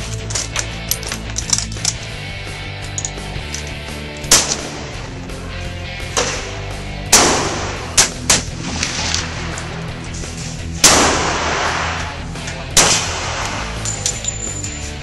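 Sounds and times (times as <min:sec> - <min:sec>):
music: 0:00.0 - 0:15.0
gunshots with ringing echo: 0:04.3 - 0:05.0, 0:06.2 - 0:09.2, 0:10.8 - 0:14.0.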